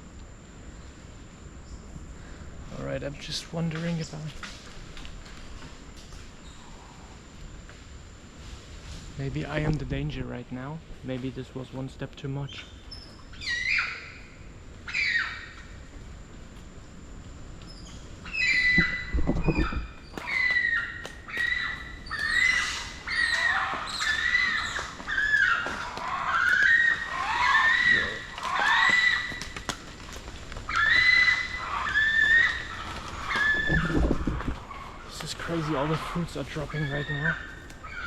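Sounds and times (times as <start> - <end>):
monkeys calling: 13.4 - 15.8, 17.8 - 29.9, 30.6 - 38.0.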